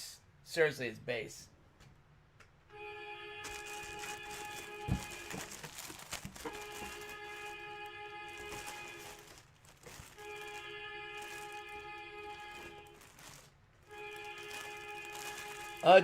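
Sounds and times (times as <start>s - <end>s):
background music with held notes: 2.7s - 16.0s
handling rustling and clicks: 3.5s - 7.6s, 8.3s - 10.6s.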